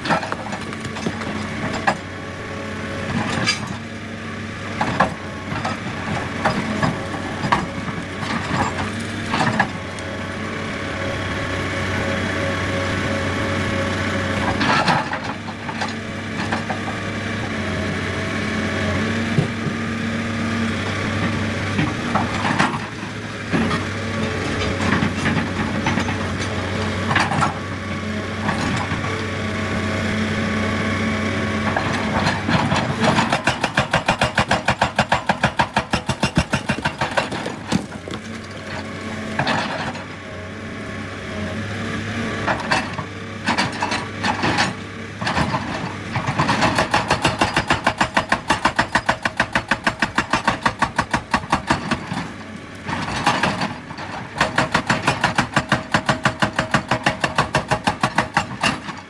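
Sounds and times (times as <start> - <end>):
excavator diesel engine running: 0.0 - 59.0
knocks and scrapes on rock: 35.5 - 39.8.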